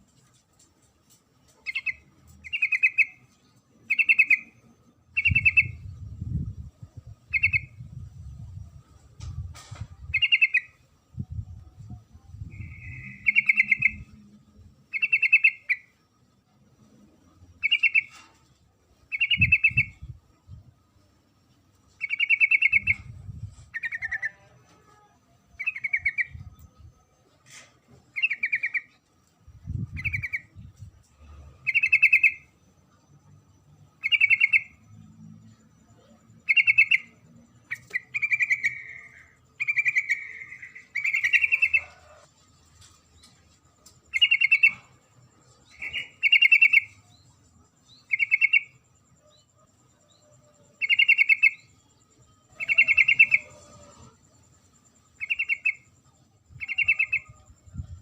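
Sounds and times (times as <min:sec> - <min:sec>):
bulbul chattering call: 0:37.7 - 0:42.2.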